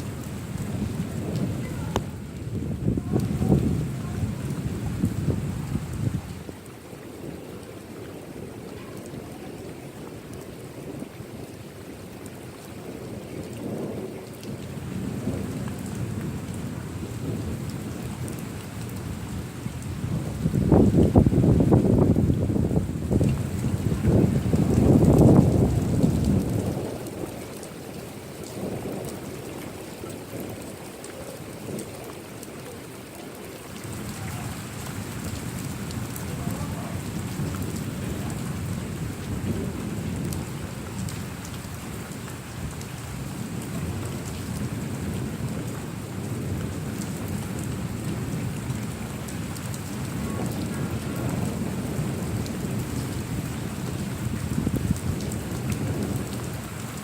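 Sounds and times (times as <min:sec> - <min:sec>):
rolling thunder: 0:00.0 - 0:06.5, 0:12.8 - 0:30.7, 0:33.8 - 0:57.0
steady rain falling: 0:00.0 - 0:57.0.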